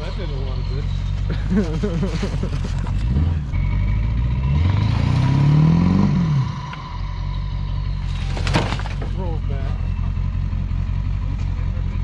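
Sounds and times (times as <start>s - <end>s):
car engine revving: 0.0s - 12.0s
sharp clatter: 8.0s - 9.5s.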